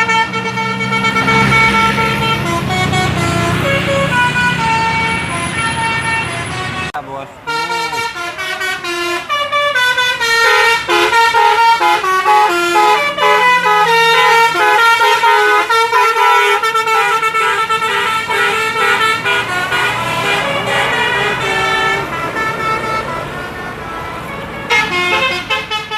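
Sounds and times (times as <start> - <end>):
bus horns playing a melody: 0.0 - 25.9.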